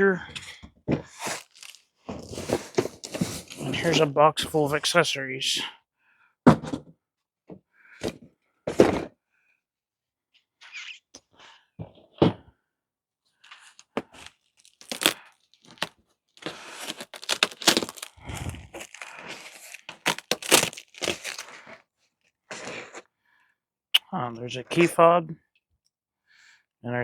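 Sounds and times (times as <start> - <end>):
packaging crinkling and tearing: 1.1 - 3.7, 13.5 - 21.8.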